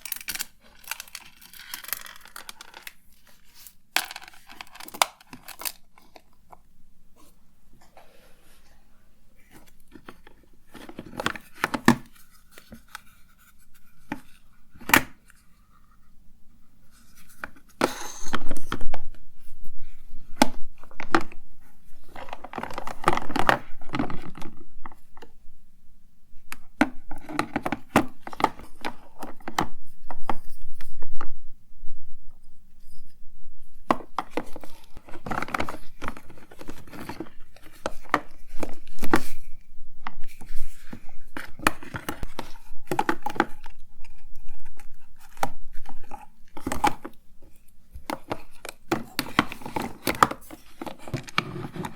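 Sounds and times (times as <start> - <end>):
packaging rustling and clattering: 0.0 - 6.3, 20.7 - 25.0, 33.8 - 51.9.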